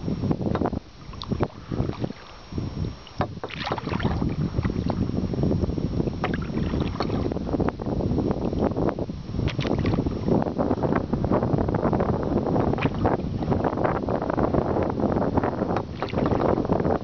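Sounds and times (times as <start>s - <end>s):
wind buffeting microphone: 0.0s - 17.0s
water splashes: 1.0s - 5.1s, 6.1s - 7.5s, 9.4s - 10.4s, 12.6s - 13.8s, 15.7s - 17.0s.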